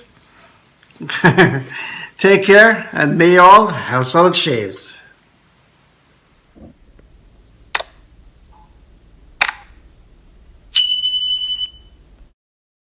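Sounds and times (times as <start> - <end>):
sharp clicks: 6.6 - 12.3
high-pitched electronic beep: 10.7 - 12.0.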